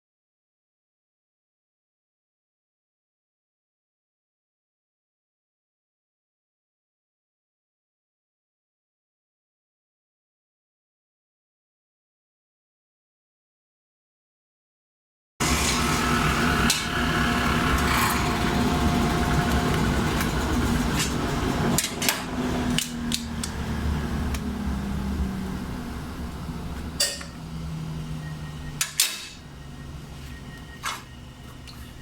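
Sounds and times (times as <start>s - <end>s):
table saw running: 15.4s - 31.4s.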